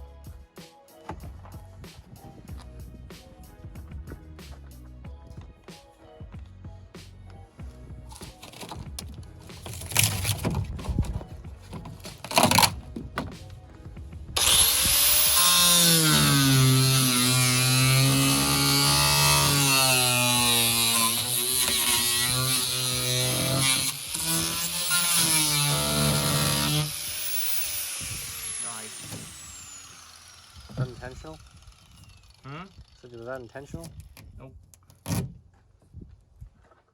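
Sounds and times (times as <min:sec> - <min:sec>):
electric power saw cutting wood: 0:08.2 - 0:08.8, 0:09.5 - 0:11.1, 0:11.9 - 0:12.9, 0:14.4 - 0:33.4.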